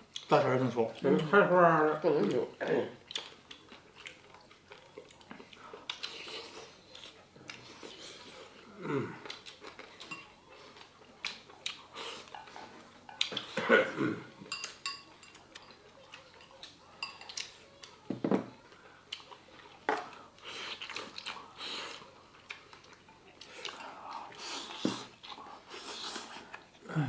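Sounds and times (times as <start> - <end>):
chopsticks clicking against bowls: 14.5 - 18.0
murmured voices: 26.6 - 27.0.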